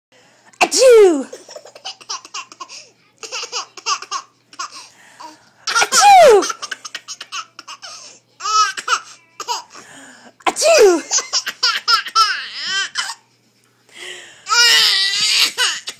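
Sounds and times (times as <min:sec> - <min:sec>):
baby sneezing: 0:00.6 - 0:01.4, 0:05.7 - 0:07.8, 0:10.4 - 0:12.3
baby laughing: 0:01.2 - 0:04.9, 0:05.7 - 0:09.8, 0:10.7 - 0:13.4, 0:14.5 - 0:15.9.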